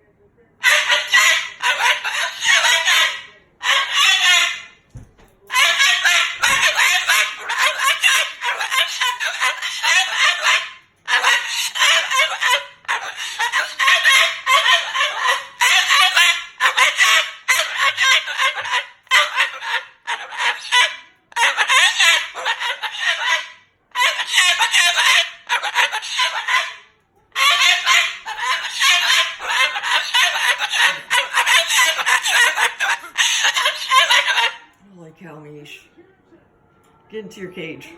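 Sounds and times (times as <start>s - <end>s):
cockatoo calling harshly: 0.6s - 34.8s.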